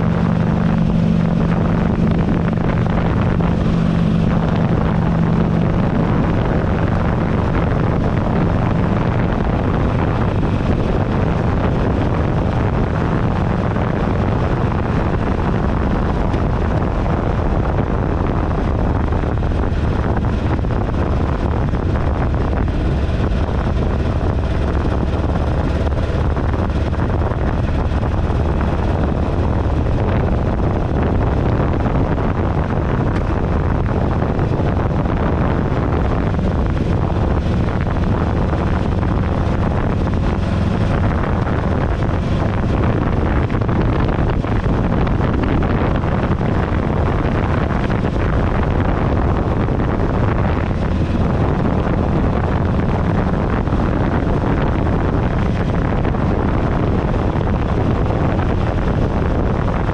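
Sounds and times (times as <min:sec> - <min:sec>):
motorcycle engine running: 0:00.0 - 0:59.9
wind buffeting microphone: 0:00.0 - 0:59.9.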